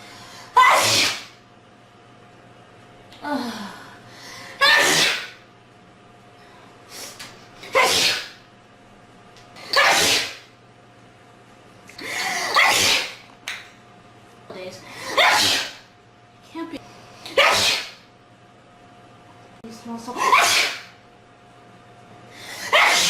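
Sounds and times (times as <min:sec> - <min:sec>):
person sneezing: 0:00.6 - 0:01.4, 0:04.6 - 0:05.4, 0:07.0 - 0:08.4, 0:09.7 - 0:10.5, 0:12.0 - 0:13.2, 0:15.0 - 0:15.8, 0:17.4 - 0:18.0, 0:20.2 - 0:20.9, 0:22.5 - 0:23.0.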